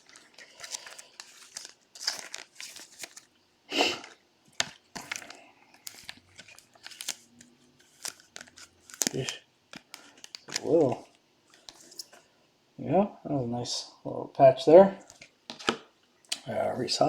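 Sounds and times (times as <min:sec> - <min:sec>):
cards rustling: 0:00.0 - 0:03.3, 0:04.0 - 0:12.2
wrapper crinkling and tearing: 0:00.0 - 0:03.3, 0:04.0 - 0:11.1.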